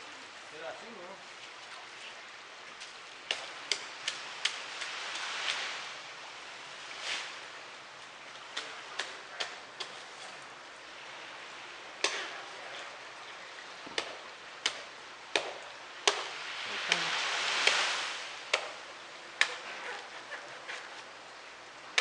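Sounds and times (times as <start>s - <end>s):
rustling of fronds: 0.0s - 22.0s
machete chopping palm fronds: 14.0s - 16.3s.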